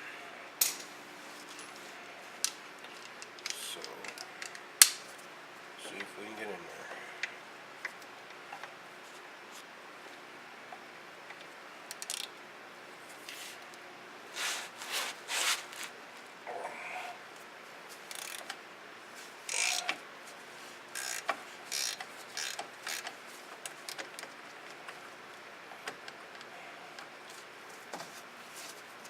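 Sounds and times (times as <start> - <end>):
ratchet turning bolts: 11.9 - 12.3, 18.1 - 18.5, 19.5 - 19.9, 21.0 - 23.1.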